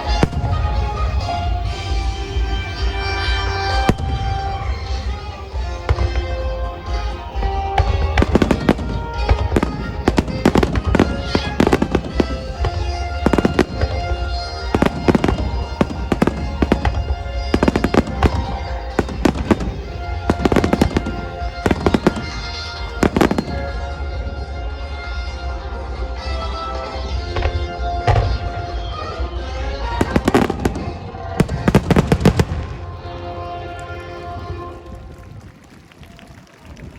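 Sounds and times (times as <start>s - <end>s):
fireworks shells bursting: 0.0s - 23.8s
music playing: 0.0s - 35.4s.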